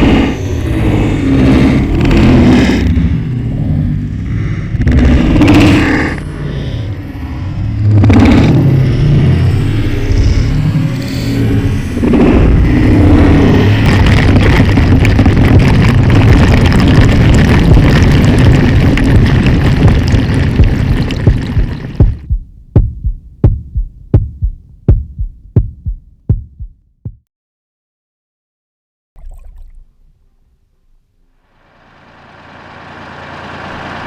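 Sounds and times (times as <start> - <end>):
loud dense rumbling: 0.0 - 26.8
regular thumps: 13.9 - 27.2.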